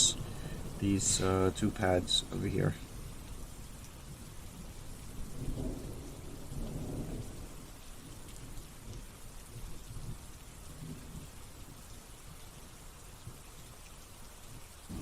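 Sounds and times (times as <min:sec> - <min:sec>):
steady background hiss: 0:00.0 - 0:07.7.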